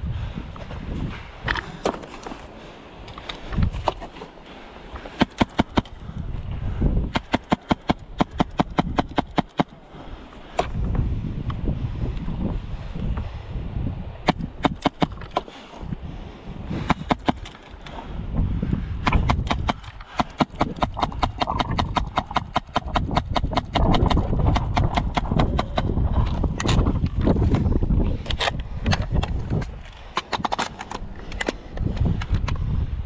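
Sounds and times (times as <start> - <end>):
airsoft rifles firing: 5.2 - 6.0, 7.1 - 9.7.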